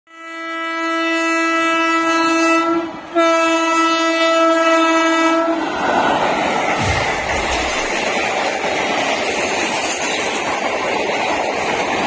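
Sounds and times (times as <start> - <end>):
locomotive horn blasts: 0.1 - 5.7.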